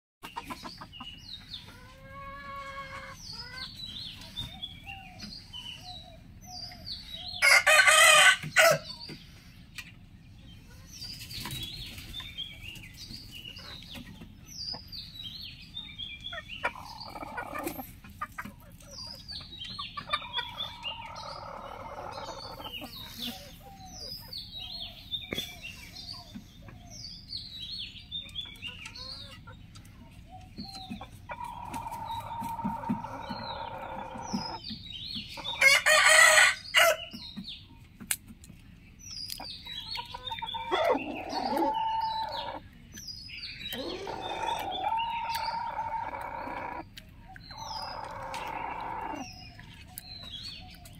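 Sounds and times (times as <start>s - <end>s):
hens clucking: 0.2s - 27.0s, 28.2s - 50.9s
roosters crowing: 7.4s - 9.0s, 31.4s - 34.6s, 35.4s - 37.1s, 40.3s - 42.6s, 43.8s - 46.9s, 47.5s - 49.4s.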